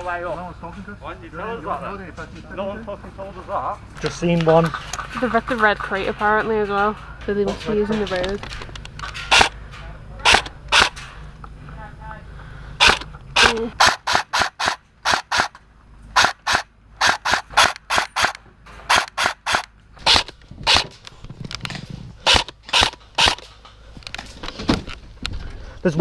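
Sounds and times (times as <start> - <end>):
airsoft gun shots: 9.2 - 9.6, 10.2 - 11.0, 12.8 - 21.0, 22.2 - 23.5.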